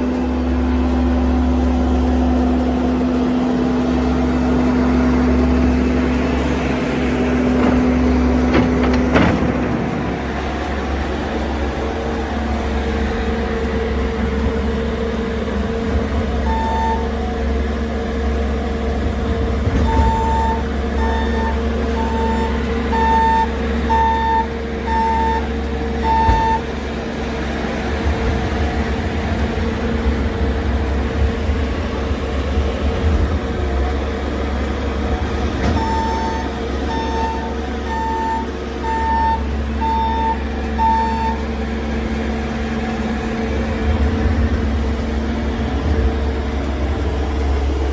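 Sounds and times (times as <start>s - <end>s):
heavy vehicle engine running: 0.0s - 47.9s
reversing alarm beeping: 16.4s - 17.2s, 19.8s - 26.8s, 35.6s - 41.5s.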